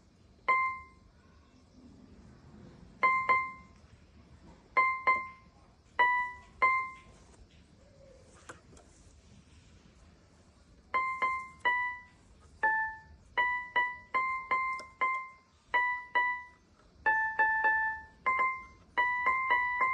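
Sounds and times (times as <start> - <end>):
electronic keyboard single notes: 0.4 - 1.1, 3.0 - 3.8, 4.7 - 7.3, 10.9 - 19.9.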